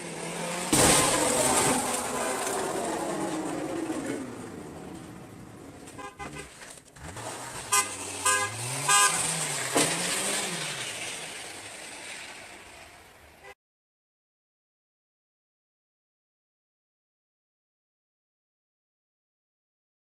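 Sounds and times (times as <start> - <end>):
vehicle engine revving: 0.0 - 13.4
car horn tooting: 5.9 - 6.6, 7.6 - 9.7.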